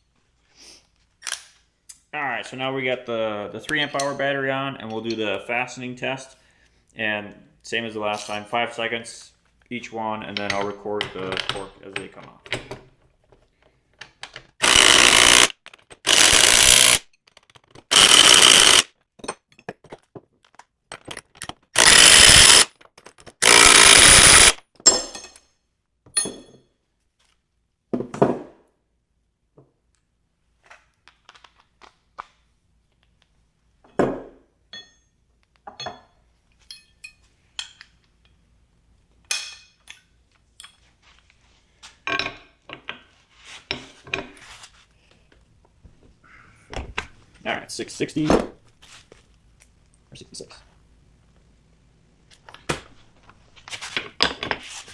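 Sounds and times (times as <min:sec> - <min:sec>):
impact driver hammering bolts: 0:14.6 - 0:17.0, 0:17.8 - 0:18.8, 0:21.8 - 0:22.7, 0:23.3 - 0:24.6.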